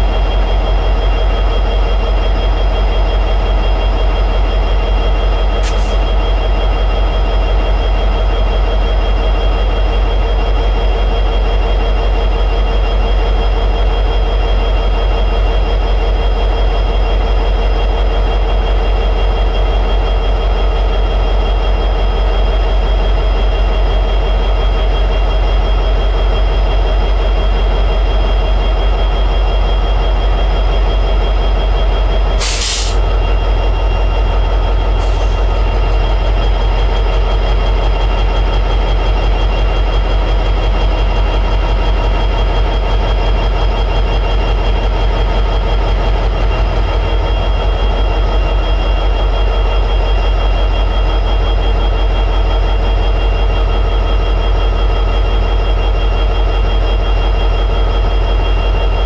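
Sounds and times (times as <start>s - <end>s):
locomotive diesel engine idling: 26.8s - 42.0s
air hiss bursts: 32.4s - 33.0s.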